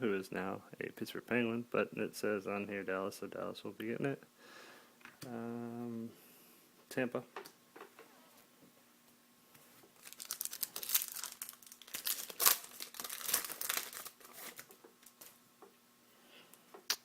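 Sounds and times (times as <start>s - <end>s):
wrapper crinkling and tearing: 10.0s - 15.4s.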